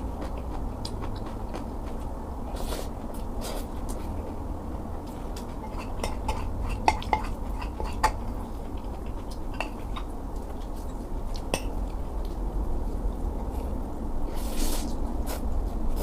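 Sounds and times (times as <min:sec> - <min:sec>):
steady low rumble: 0:00.0 - 0:16.0.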